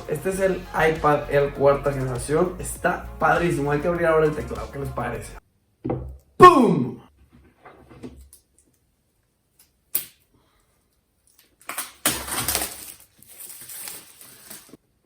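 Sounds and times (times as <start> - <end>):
packaging scraping and rustling: 11.7 - 14.8.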